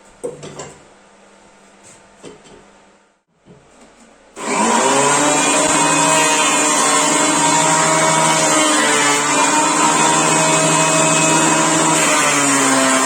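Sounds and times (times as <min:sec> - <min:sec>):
power tool motor running: 0:04.4 - 0:13.0.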